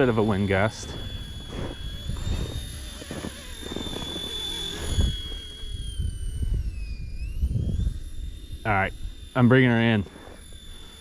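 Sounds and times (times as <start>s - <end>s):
wind buffeting microphone: 0.0s - 9.3s
toy helicopter rotor whine: 0.0s - 11.0s.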